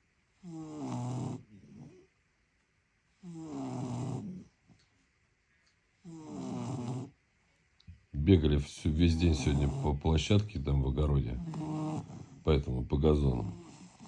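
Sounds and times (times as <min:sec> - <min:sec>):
dogs snoring: 0:00.4 - 0:02.1, 0:03.2 - 0:04.6, 0:06.0 - 0:07.2, 0:08.8 - 0:14.0.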